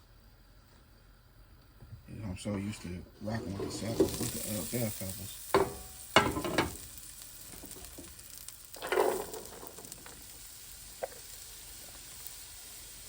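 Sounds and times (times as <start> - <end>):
stirring scrapes in a pan: 2.6 - 4.8, 7.6 - 10.3
vegetables sizzling in a pan: 3.2 - 13.0.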